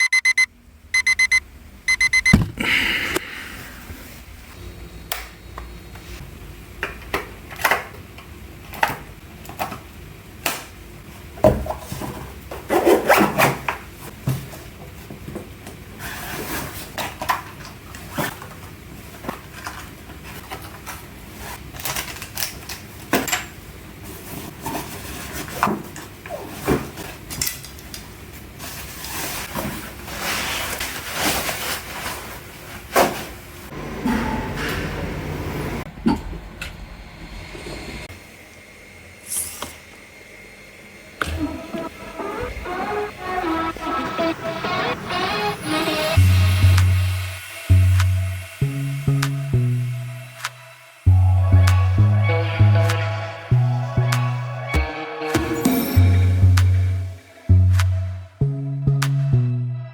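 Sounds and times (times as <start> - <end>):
electronic beeping: 0.0 - 2.6
knocks and clicks of handling: 2.2 - 2.6.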